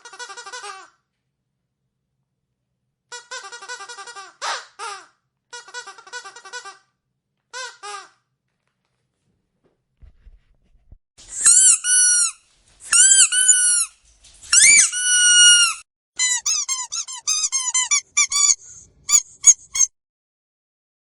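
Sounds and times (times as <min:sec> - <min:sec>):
squeaky dog toy squeaks: 0:00.0 - 0:00.9, 0:03.1 - 0:06.8, 0:07.5 - 0:08.2, 0:11.3 - 0:13.9, 0:14.5 - 0:20.0.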